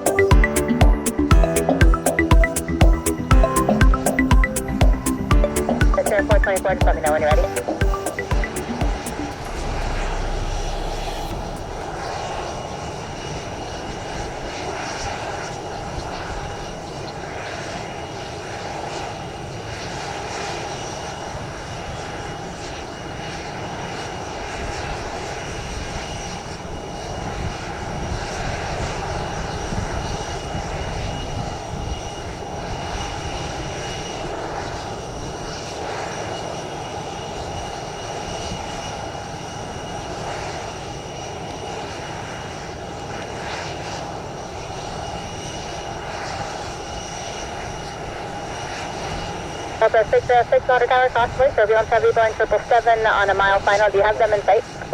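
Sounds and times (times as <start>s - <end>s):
high whining engine tones: 0.0s - 14.3s
jet airliner engines running: 0.0s - 54.9s.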